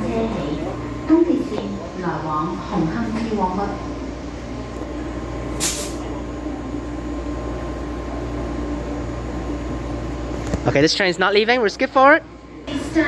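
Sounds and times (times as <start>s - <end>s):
train equipment humming: 0.0s - 13.0s
air hiss: 5.6s - 6.0s.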